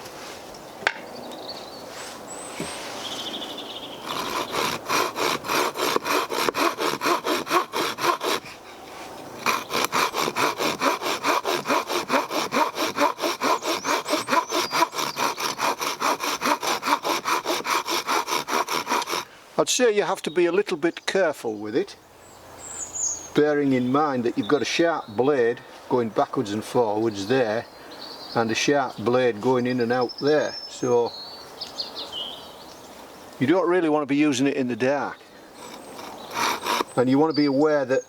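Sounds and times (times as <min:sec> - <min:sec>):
saw blade sawing through wood: 0:04.0 - 0:19.3, 0:35.6 - 0:37.5.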